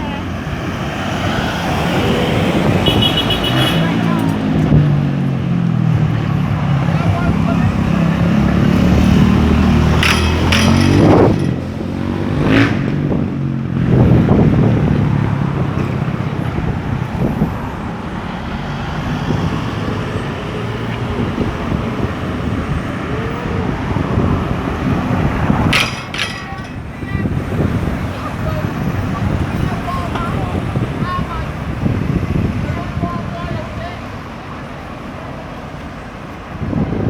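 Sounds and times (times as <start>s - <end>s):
road traffic noise: 0.0s - 37.0s
vehicle engine pulling away: 3.8s - 25.7s
sharp knocks: 9.6s - 12.2s, 25.6s - 27.0s.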